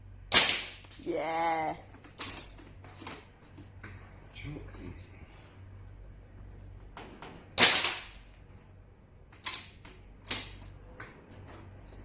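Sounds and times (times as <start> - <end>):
air rifle shot: 0.3 - 0.8, 7.6 - 8.2.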